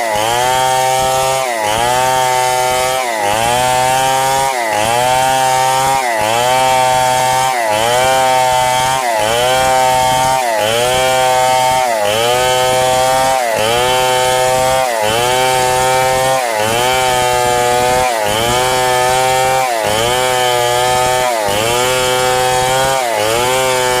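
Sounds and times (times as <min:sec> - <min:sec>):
power saw ripping boards: 0:00.0 - 0:24.0.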